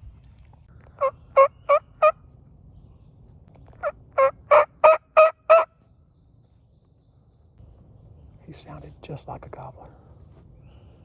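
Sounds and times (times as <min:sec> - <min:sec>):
wild turkey yelps: 0:01.0 - 0:02.2, 0:03.8 - 0:05.7.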